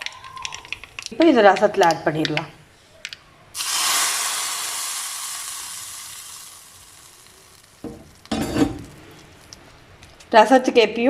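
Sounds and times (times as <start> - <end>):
hot oil sizzling: 3.6 - 10.2.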